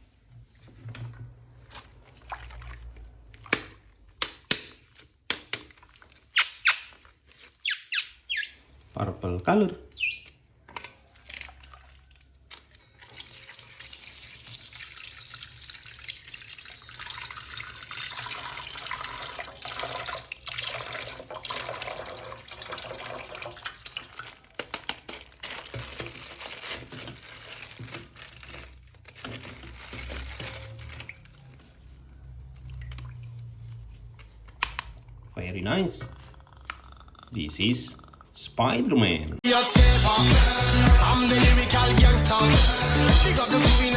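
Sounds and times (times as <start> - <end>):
tap water running and splashing: 11.3 - 26.2.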